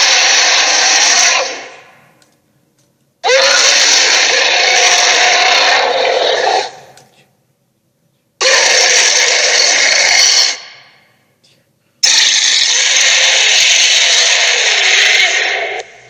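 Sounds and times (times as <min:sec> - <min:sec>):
harsh monster roars: 0:00.0 - 0:01.9, 0:03.2 - 0:06.9, 0:08.4 - 0:10.8, 0:12.0 - 0:16.0.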